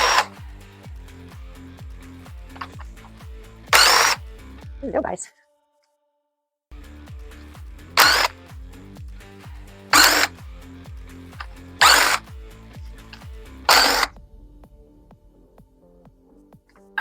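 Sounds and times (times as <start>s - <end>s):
power drill spinning out bolts: 0.0s - 0.4s, 3.7s - 4.3s, 8.0s - 8.4s, 9.9s - 10.3s, 11.4s - 12.3s, 13.7s - 14.1s
background music with steady beat: 0.0s - 5.2s, 6.7s - 17.0s.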